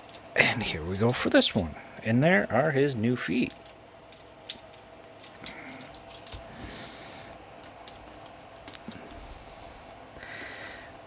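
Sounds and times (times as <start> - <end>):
plastic figure parts clicking: 0.0 - 6.5, 7.3 - 9.1.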